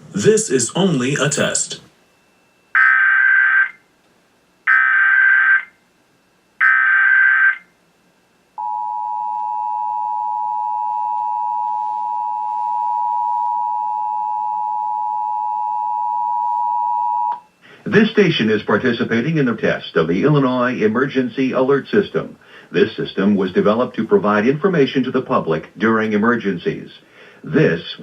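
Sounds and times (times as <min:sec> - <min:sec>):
two-tone attention signal: 0:08.6 - 0:17.5.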